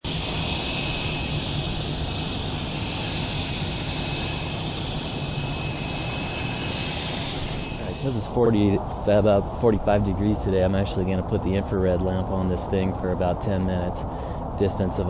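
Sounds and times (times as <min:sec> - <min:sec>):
spray paint hissing: 0:00.0 - 0:08.2
thin steady whistle: 0:00.1 - 0:08.2.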